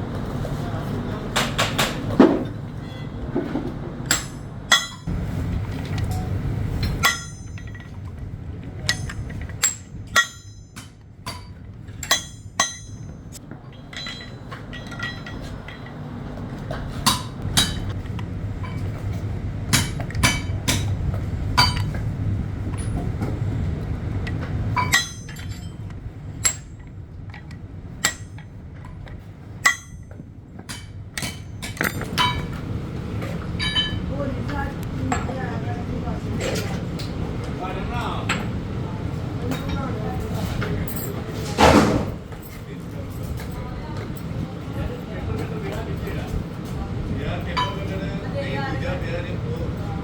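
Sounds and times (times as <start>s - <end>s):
low machine hum: 0.0s - 50.0s
metal striking metal: 6.8s - 8.0s, 8.8s - 13.2s.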